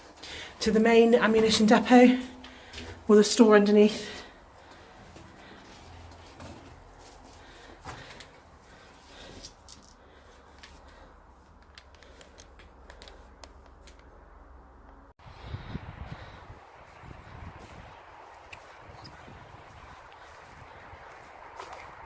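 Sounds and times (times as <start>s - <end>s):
footsteps on gritty debris: 17.6s - 22.0s.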